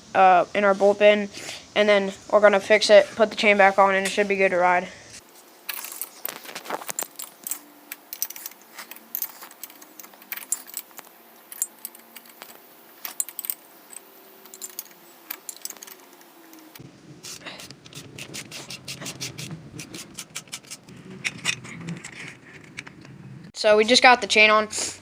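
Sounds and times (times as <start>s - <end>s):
metal bolts clinking and rattling: 5.7s - 16.8s.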